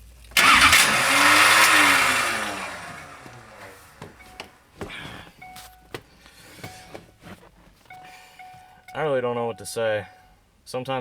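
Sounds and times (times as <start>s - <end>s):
starter motor grinding and whining: 0.2s - 4.4s.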